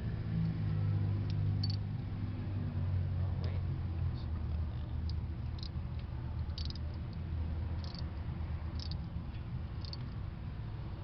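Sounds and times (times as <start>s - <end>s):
ratchet wrench clicking: 1.2s - 1.8s, 6.4s - 7.2s, 7.8s - 8.1s, 8.7s - 9.1s, 9.8s - 10.2s.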